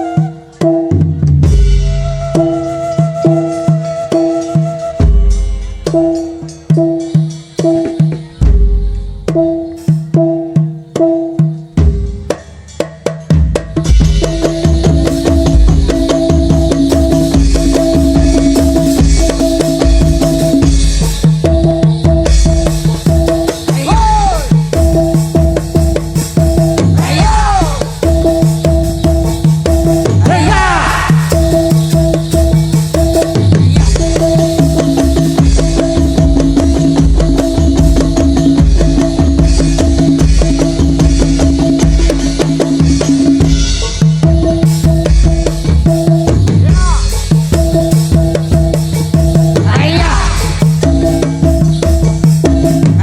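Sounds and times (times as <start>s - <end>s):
ringing pitched notes: 0.0s - 12.8s
fast dense drumming: 5.0s - 53.0s
deep bass drum beat: 13.2s - 53.0s.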